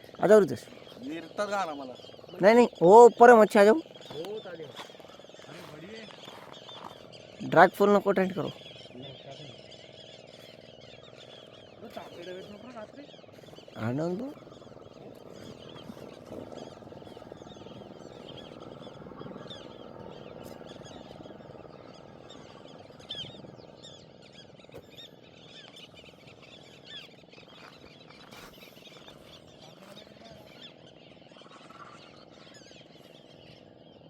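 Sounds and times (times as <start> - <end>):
frogs chirping: 0.0 - 34.0
low murmur: 8.6 - 25.8.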